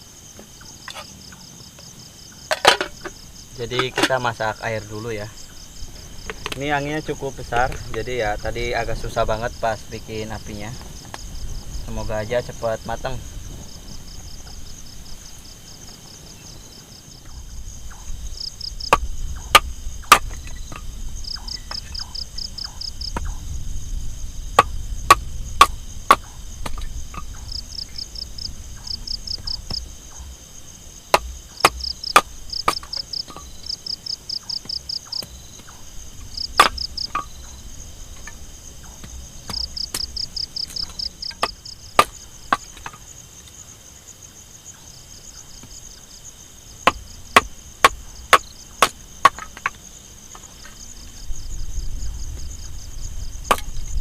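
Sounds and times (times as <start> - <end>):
crickets chirping: 0.0 - 54.0
sharp knocks or cracks: 2.5 - 4.2, 18.9 - 20.9, 24.6 - 27.4, 31.1 - 33.8, 36.4 - 37.3, 38.2 - 43.0, 46.8 - 50.5, 53.5 - 53.8.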